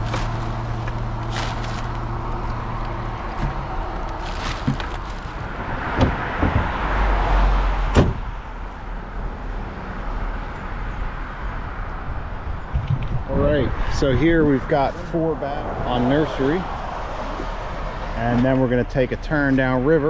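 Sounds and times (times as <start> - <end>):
sharp knocks: 5.9 - 6.8.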